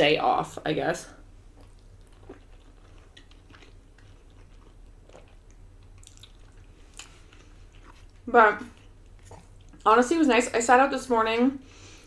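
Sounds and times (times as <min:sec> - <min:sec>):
close-up chewing: 0:01.4 - 0:09.9.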